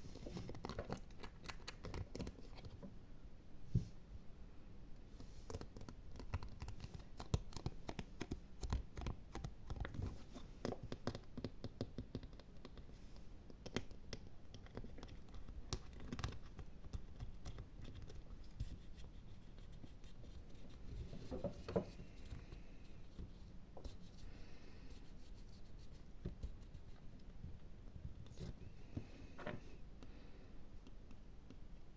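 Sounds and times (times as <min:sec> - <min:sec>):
fingers scratching an object: 0:13.7 - 0:24.3.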